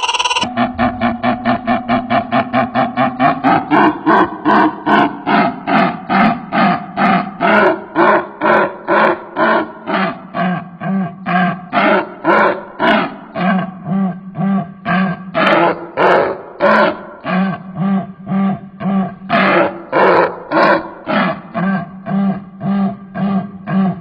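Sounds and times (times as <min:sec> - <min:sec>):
bird giving harsh calls: 0:00.0 - 0:00.5.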